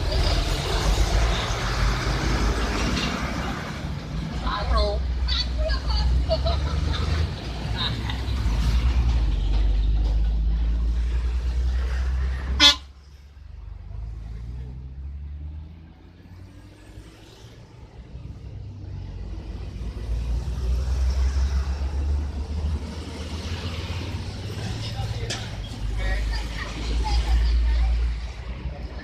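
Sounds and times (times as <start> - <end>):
vehicle engine rumbling past: 0.0 - 5.2, 6.1 - 29.0
car horn toot: 12.5 - 12.9.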